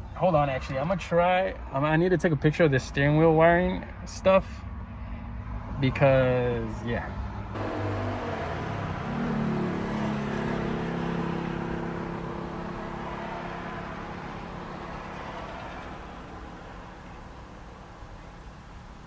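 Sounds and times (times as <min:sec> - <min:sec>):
car engine running: 0:07.6 - 0:19.0.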